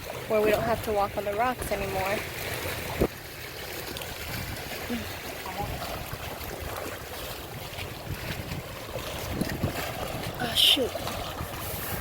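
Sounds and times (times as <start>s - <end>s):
sea water washing on shore: 0.0s - 12.0s
wind rumble on microphone: 4.0s - 12.0s.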